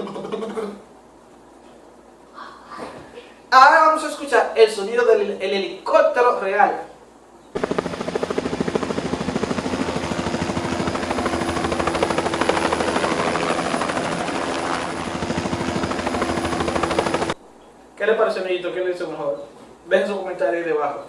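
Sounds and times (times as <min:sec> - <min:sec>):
helicopter engine whine: 0:07.6 - 0:17.4
helicopter rotor chop: 0:07.6 - 0:17.4.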